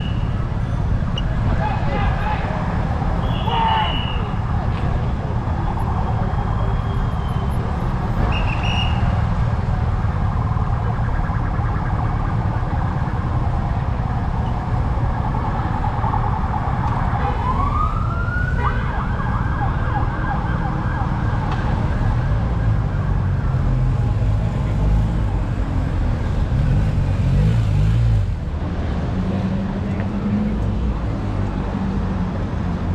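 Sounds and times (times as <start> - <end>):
city street traffic rumble: 0.0 - 32.9
emergency vehicle siren wailing: 1.4 - 24.4.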